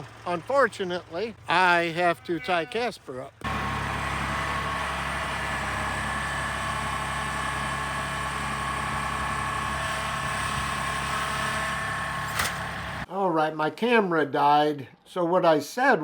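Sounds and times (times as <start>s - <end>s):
tractor diesel engine running: 0.0s - 13.1s.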